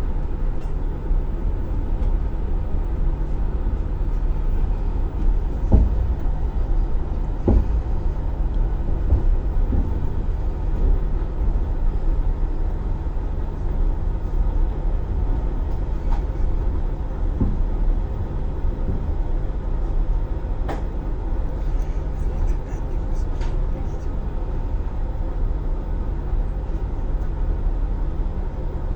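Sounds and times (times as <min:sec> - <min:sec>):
train low rumble: 0:00.0 - 0:28.9
knocks and clunks: 0:05.2 - 0:11.1, 0:17.3 - 0:17.8.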